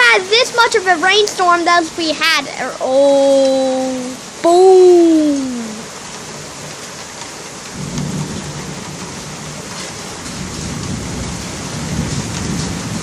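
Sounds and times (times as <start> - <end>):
heavy rain: 0.0 - 13.0
thunder rumbling: 7.7 - 13.0.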